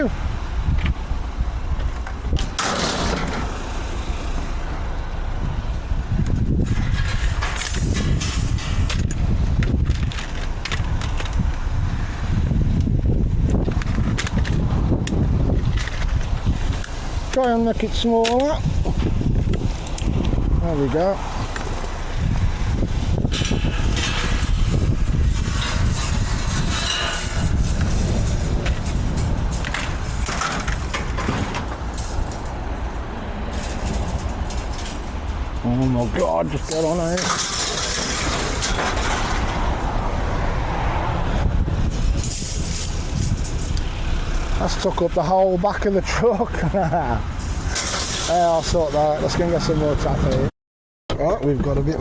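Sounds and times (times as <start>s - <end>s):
steady low rumble: 0.0s - 47.8s
scrap metal clattering: 1.8s - 5.0s, 6.3s - 11.7s, 13.5s - 40.4s, 41.7s - 44.8s, 46.7s - 49.0s.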